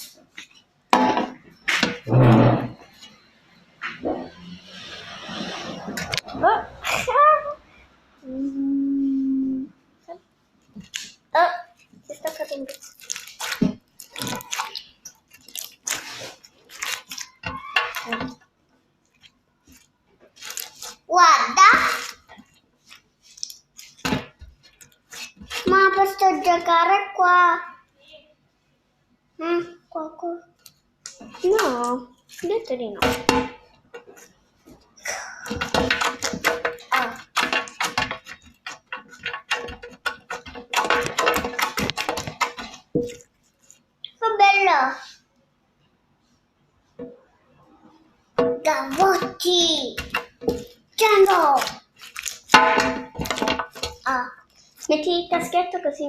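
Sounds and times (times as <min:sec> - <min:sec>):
slime squelching: 0:10.7 - 0:18.4.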